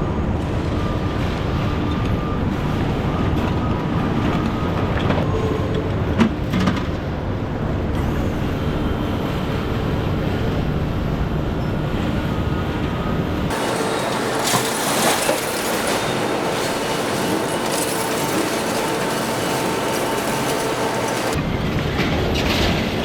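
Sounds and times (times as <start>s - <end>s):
rattling: 13.5s - 21.4s.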